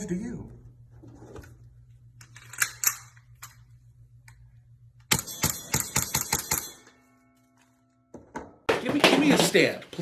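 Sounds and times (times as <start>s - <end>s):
gun firing rapid shots: 5.1s - 6.7s.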